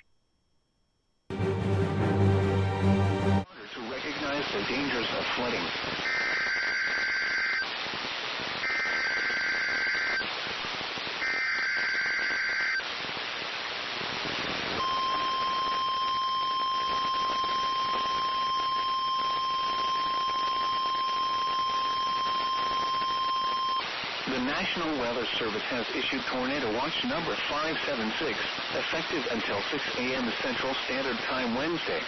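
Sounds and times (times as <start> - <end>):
radio hiss: 3.5 - 32.0
steady warning alarm tone: 8.6 - 10.2, 14.8 - 23.9
buzzy digital data bursts: 8.6 - 13.2, 14.0 - 24.7.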